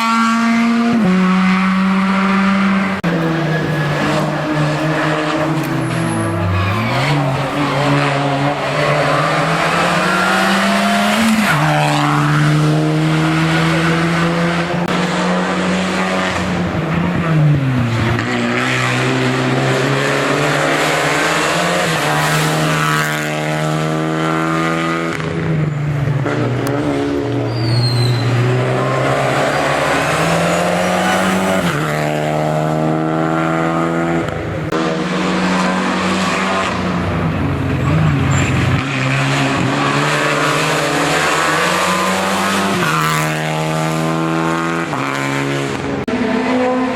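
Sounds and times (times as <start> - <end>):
race car engine revving: 0.0 - 46.9.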